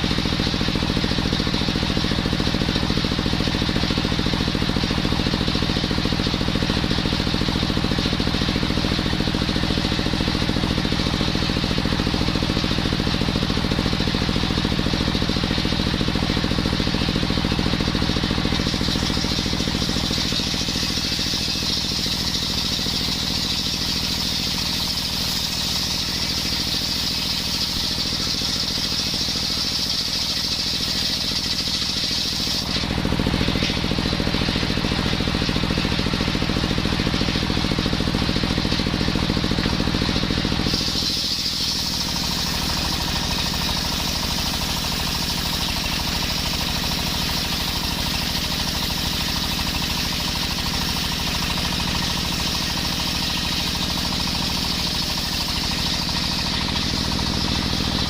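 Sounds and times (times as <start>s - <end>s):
brush-cutter engine running: 0.0s - 58.0s
saw blade cutting wood: 17.5s - 36.4s, 39.9s - 58.0s.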